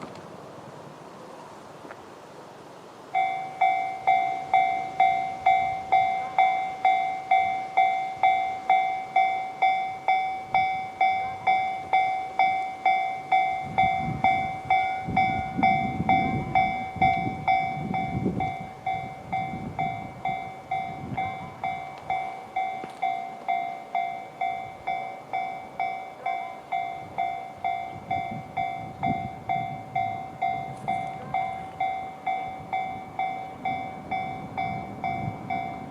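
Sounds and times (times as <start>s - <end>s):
level crossing electronic bell: 3.2s - 35.9s.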